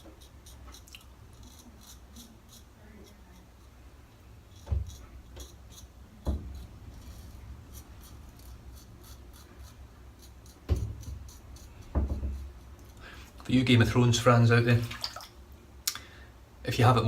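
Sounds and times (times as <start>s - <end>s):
razor scraping stubble: 0.0s - 3.8s, 4.5s - 13.4s.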